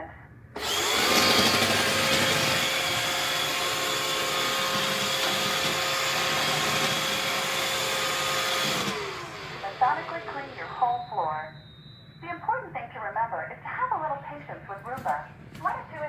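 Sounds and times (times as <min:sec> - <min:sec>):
robot vacuum running: 0:00.6 - 0:11.9.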